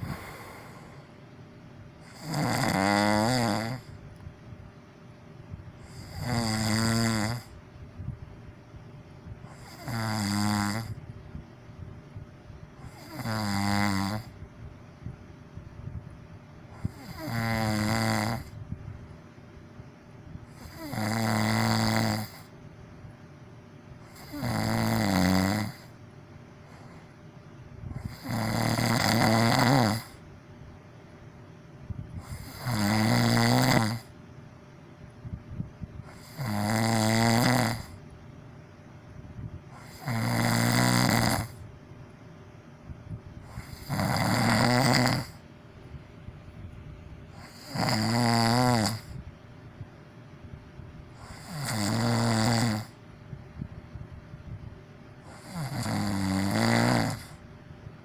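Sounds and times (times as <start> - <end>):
person snoring loudly: 0.0 - 1.0, 2.0 - 4.0, 5.8 - 7.5, 9.5 - 11.0, 12.8 - 14.4, 16.8 - 18.6, 20.5 - 22.5, 24.1 - 25.9, 27.9 - 30.2, 32.2 - 34.1, 36.1 - 38.0, 39.8 - 41.6, 43.4 - 45.4, 47.3 - 49.2, 51.2 - 53.0, 55.2 - 57.4.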